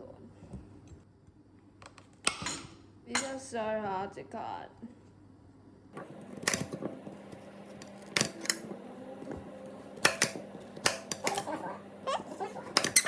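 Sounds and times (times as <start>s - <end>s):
knife chopping carrots: 6.0s - 13.0s.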